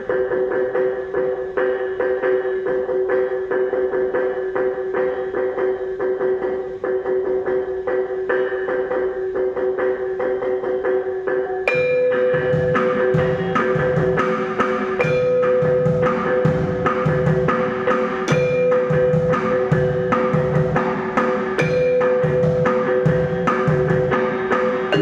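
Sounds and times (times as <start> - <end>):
pitched mallet instruments: 24.8 - 25.0.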